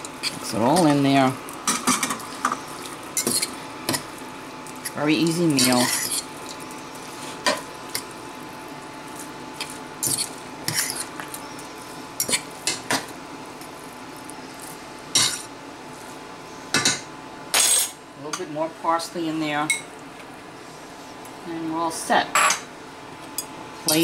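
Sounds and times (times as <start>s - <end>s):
utensil scraping a pot: 1.9s - 4.1s, 4.8s - 8.1s, 9.6s - 11.6s.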